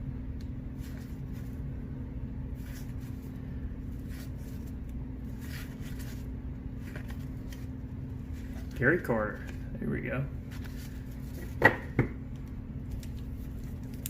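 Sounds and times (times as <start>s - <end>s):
steady low hum: 0.0s - 14.0s
paper cards rustling and clicking: 4.0s - 7.7s, 12.4s - 14.0s.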